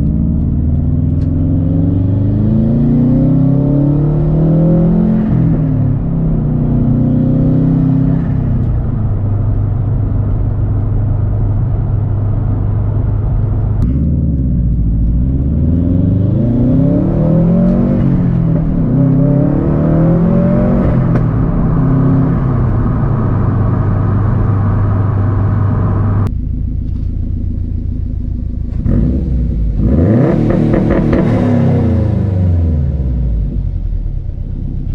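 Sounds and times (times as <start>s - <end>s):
car engine revving while driving: 0.0s - 26.3s, 28.7s - 34.0s.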